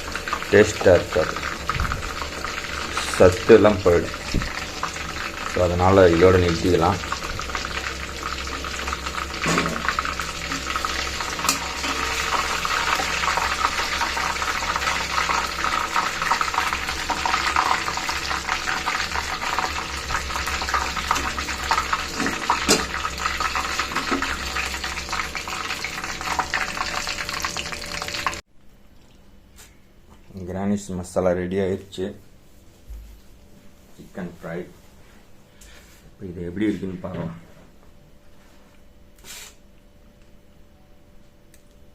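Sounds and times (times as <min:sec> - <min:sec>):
chicken deep-frying in oil: 0:00.0 - 0:28.4.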